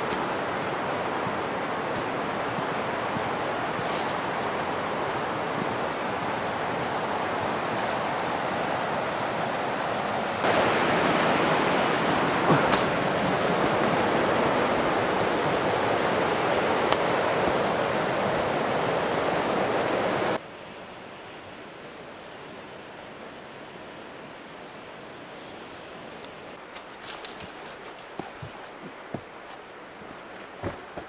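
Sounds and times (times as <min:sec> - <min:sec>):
steady rushing noise: 0:00.0 - 0:20.4.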